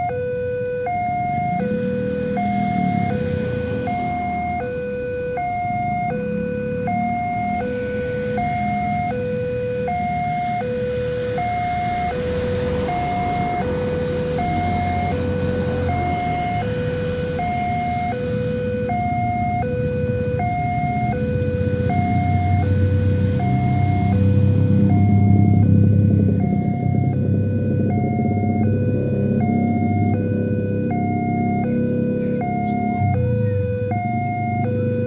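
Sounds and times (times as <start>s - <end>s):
two-tone electronic warning siren: 0.0s - 35.0s
low rumble: 18.7s - 35.0s.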